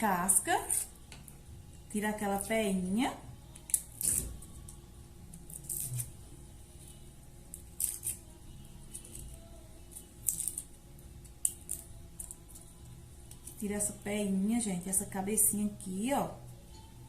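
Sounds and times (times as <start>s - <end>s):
garlic peel papery scrapes: 3.6s - 4.4s, 5.4s - 6.2s, 7.5s - 8.3s, 8.9s - 10.8s.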